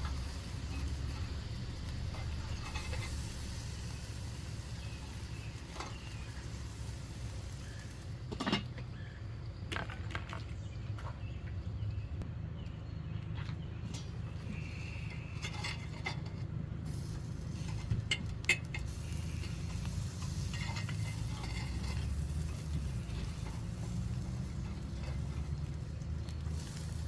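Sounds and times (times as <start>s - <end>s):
utensils clinking on cookware: 17.6s - 25.6s.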